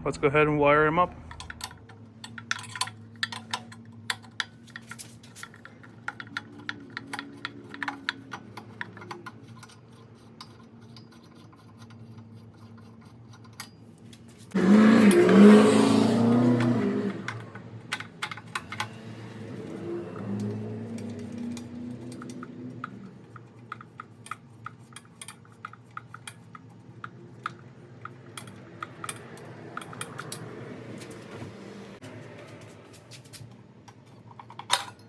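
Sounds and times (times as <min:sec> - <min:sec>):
hands tapping on wiring: 0:01.3 - 0:12.3.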